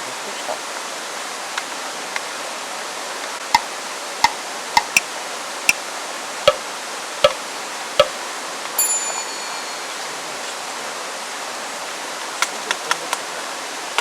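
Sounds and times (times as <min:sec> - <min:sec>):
steady hiss: 0:00.0 - 0:14.0
metal utensil knocking on pan: 0:03.6 - 0:05.0.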